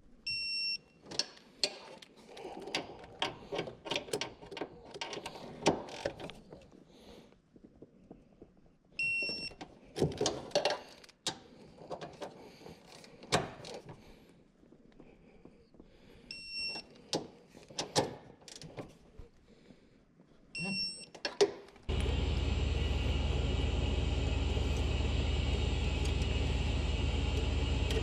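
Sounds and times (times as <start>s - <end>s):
tools clicking and scraping: 10.0s - 14.0s.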